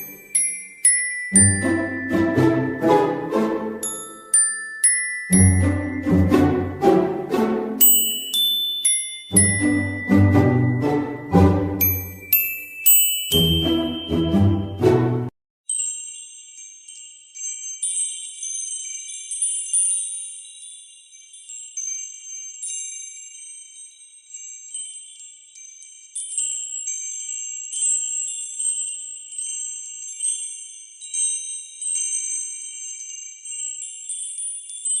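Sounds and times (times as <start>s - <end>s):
high bright chimes ringing: 0.0s - 21.5s.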